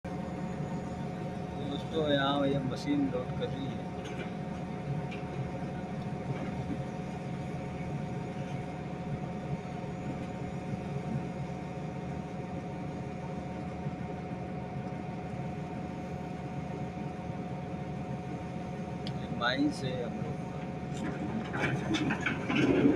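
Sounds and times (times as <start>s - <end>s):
heavy machine diesel engine: 0.0s - 22.9s
steady whine: 0.0s - 22.9s.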